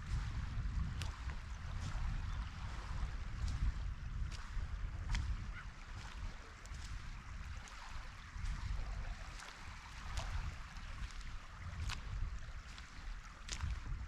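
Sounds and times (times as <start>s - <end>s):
sea water lapping: 0.0s - 14.0s
wind rumble on microphone: 0.0s - 14.0s.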